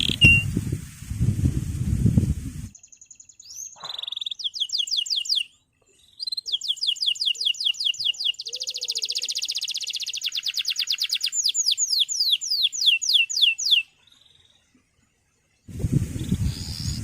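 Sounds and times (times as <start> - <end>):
canary singing: 0.0 - 0.6, 2.7 - 14.6.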